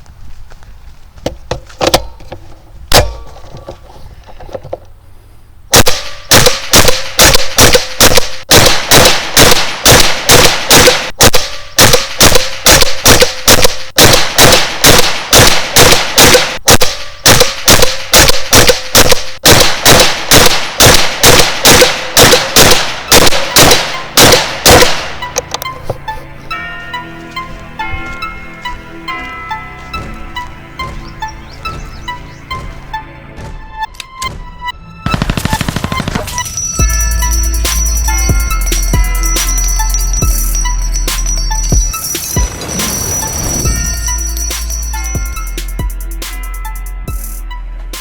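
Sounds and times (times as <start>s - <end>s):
suppressed gunshots: 5.7s - 25.3s, 35.1s - 36.5s
bullets clanging on steel: 36.1s - 45.8s.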